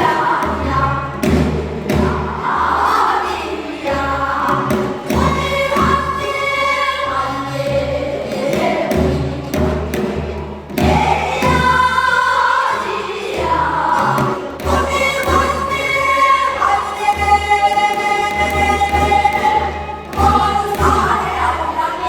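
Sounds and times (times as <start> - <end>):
folk singing voices: 0.0 - 9.7, 10.8 - 22.0.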